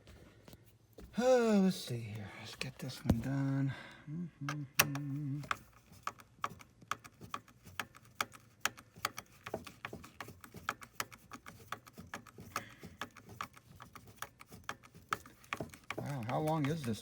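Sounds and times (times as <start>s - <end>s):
screwdriver clicking: 4.8s - 17.0s.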